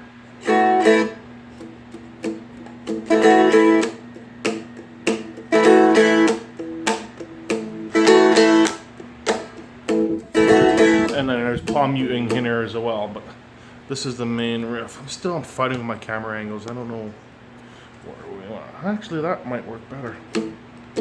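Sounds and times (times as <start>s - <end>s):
drone strings ringing: 10.0s - 11.7s.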